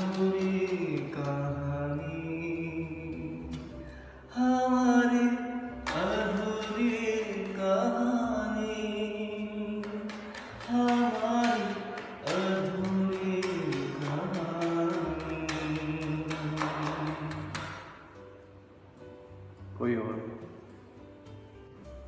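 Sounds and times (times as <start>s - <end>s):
light rhythmic tapping: 0.0s - 4.0s, 5.8s - 8.1s, 9.2s - 19.1s.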